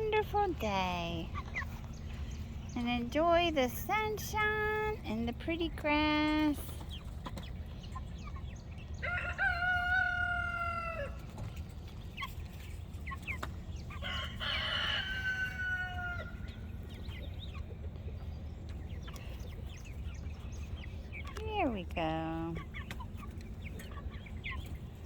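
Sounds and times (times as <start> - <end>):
chickens clucking: 0.0 - 25.0
rooster crowing: 9.0 - 11.2, 14.0 - 16.4.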